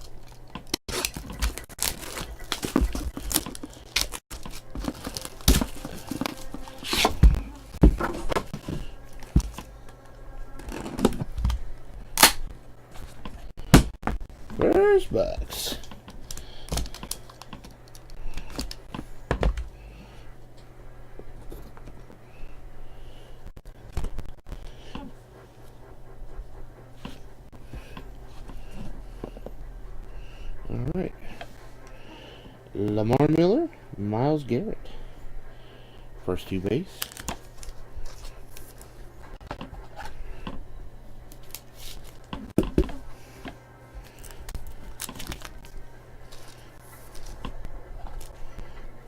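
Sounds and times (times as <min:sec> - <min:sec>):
trading cards rustling: 0:00.0 - 0:11.3, 0:15.6 - 0:19.0, 0:36.3 - 0:39.4, 0:41.3 - 0:42.3, 0:44.0 - 0:48.8.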